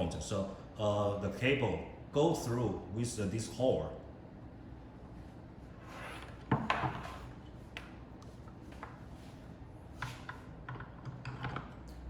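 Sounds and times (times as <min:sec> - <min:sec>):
knocks and scrapes of handling: 0:05.8 - 0:11.8.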